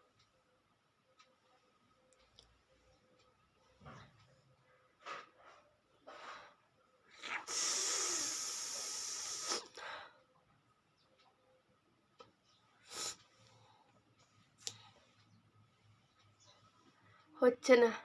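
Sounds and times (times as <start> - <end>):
person sniffing through the nose: 7.2 - 9.8, 12.8 - 13.2
loud steady hiss: 7.4 - 9.8.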